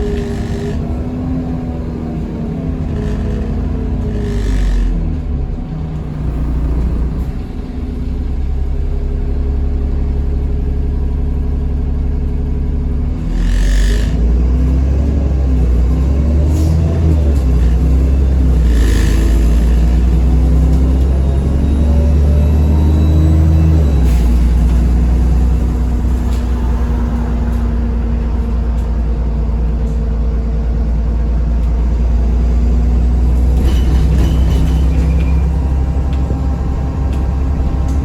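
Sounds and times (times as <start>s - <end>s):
bus engine rumbling: 0.0s - 38.0s.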